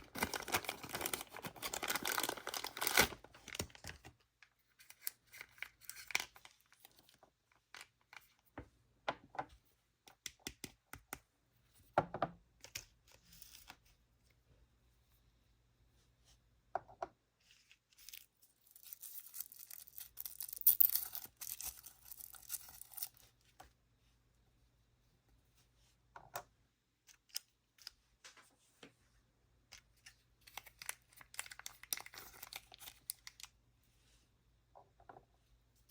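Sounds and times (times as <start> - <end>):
packaging tearing rustle: 0.0 - 4.0
packaging crinkles and clicks: 0.0 - 4.1, 30.4 - 33.5.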